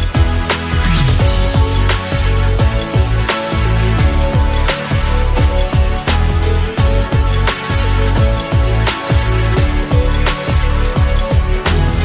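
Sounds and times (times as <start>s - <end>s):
electronic drum beat: 0.0s - 12.0s.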